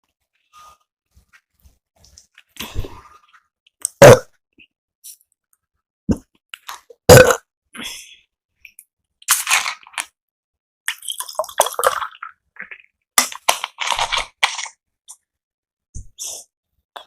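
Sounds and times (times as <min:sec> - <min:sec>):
person burping: 0:03.9 - 0:04.4, 0:07.1 - 0:07.9.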